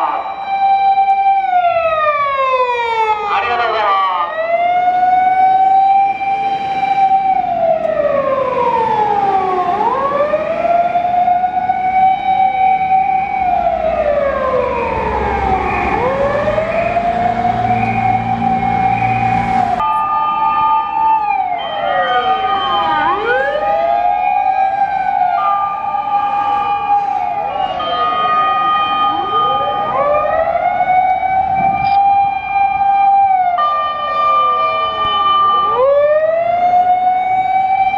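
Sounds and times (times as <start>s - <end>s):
fire engine siren wailing: 0.0s - 37.9s
siren winding down and up: 0.0s - 37.9s.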